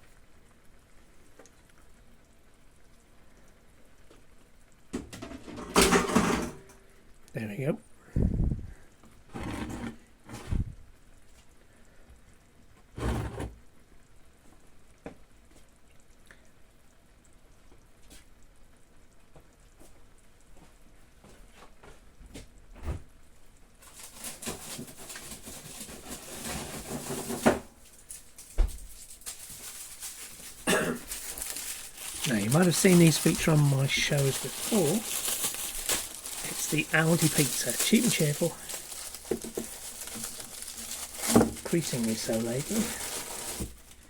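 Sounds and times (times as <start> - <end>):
rustling noise: 8.3 - 10.8, 23.8 - 44.0.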